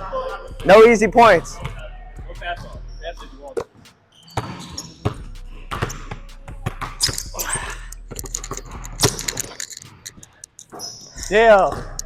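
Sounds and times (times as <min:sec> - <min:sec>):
basketball bouncing on hardwood: 0:04.4 - 0:07.1, 0:11.6 - 0:12.0.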